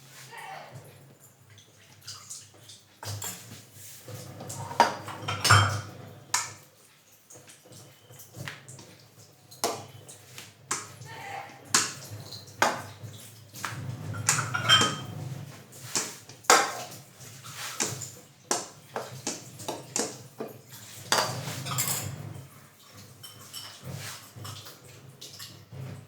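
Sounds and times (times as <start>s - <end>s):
utensils clattering against cookware: 3.0s - 6.6s, 9.6s - 24.8s.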